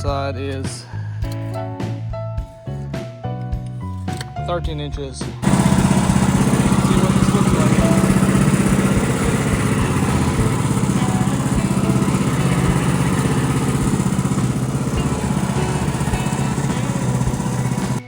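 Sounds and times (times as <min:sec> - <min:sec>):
sawmill gasoline engine running: 0:05.4 - 0:18.0.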